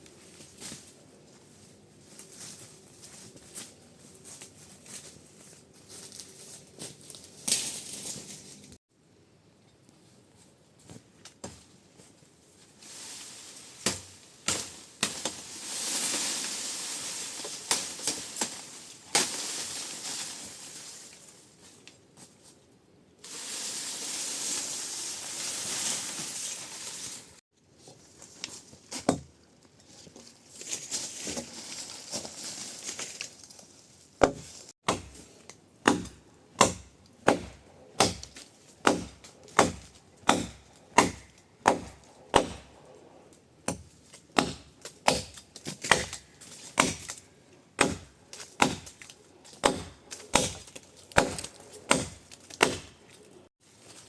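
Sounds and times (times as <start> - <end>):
rushing hiss: 23.3 - 27.4
blade chopping wood: 34.2 - 42.7, 43.7 - 47.2, 47.8 - 53.0.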